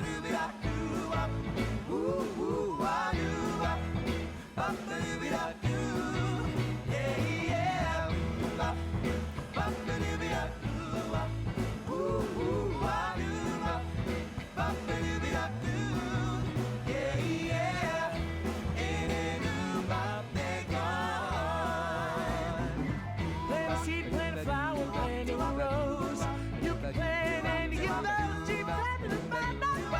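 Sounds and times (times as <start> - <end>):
rock and roll song: 0.0 - 29.9.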